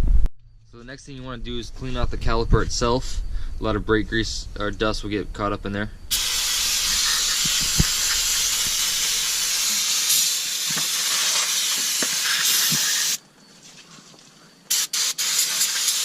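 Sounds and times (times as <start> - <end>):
aerosol spray hissing: 6.1 - 13.2, 14.7 - 16.0.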